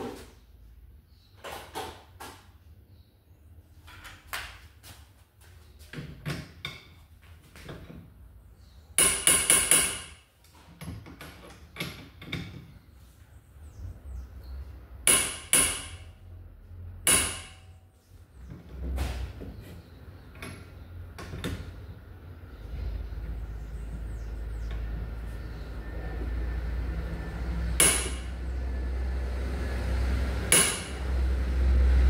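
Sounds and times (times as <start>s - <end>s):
hammer striking metal: 9.0s - 10.2s, 15.0s - 16.1s, 17.0s - 17.7s, 27.8s - 28.4s, 30.5s - 31.2s.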